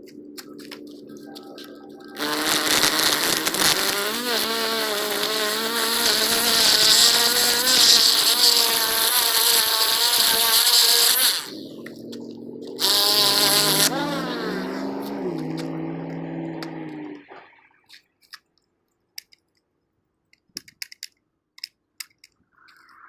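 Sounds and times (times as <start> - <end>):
string trimmer buzzing whine: 1.6 - 17.2.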